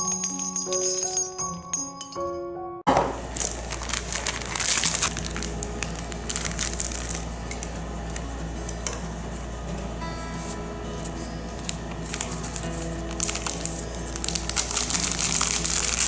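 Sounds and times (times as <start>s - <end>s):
plastic packaging crinkling and tearing: 3.2s - 8.9s, 11.5s - 16.0s
steady low hum: 3.3s - 16.0s.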